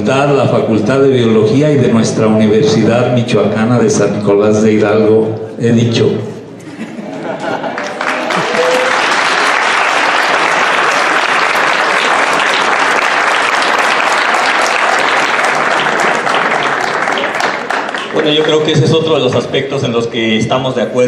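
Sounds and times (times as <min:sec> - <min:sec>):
audience applauding: 0:07.5 - 0:19.2.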